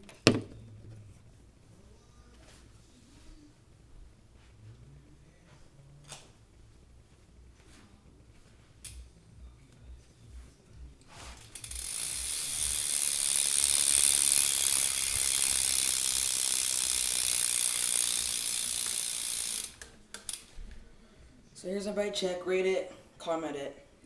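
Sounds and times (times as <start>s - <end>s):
bike hub ratcheting buzz: 11.4s - 20.4s.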